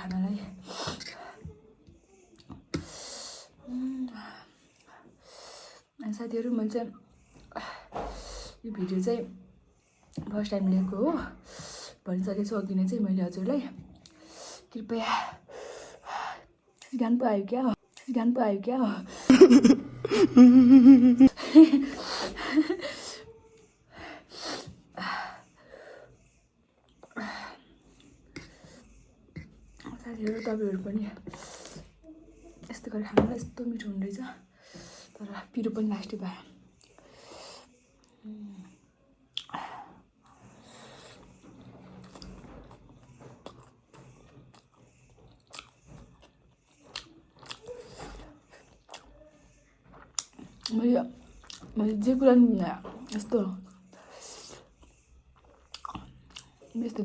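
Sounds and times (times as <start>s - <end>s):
person chewing food: 41.8s - 49.1s, 50.0s - 50.7s, 51.3s - 51.7s, 53.9s - 56.7s.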